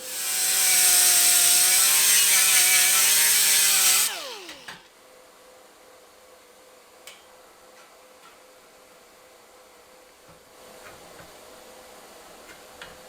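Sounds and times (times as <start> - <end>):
power grinder whining: 0.0 - 4.9.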